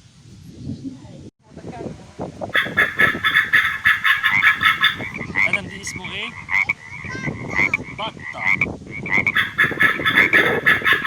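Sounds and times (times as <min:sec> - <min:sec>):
ducks quacking: 0:02.6 - 0:11.0.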